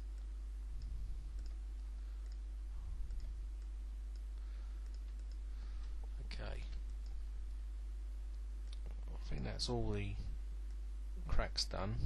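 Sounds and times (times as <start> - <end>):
computer mouse clicking: 0.0 - 1.6, 2.2 - 2.4, 3.0 - 5.4
low electrical hum: 0.0 - 12.0.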